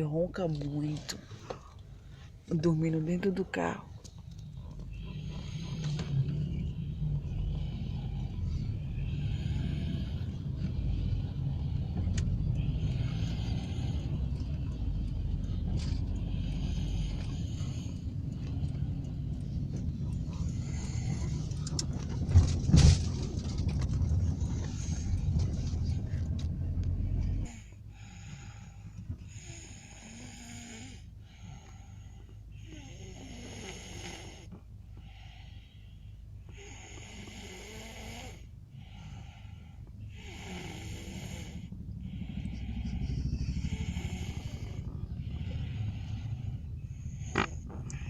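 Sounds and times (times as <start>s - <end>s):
car engine rumble: 0.0s - 48.0s
man snoring: 5.1s - 14.4s, 29.3s - 31.6s, 32.6s - 34.5s, 36.5s - 39.4s, 40.1s - 48.0s.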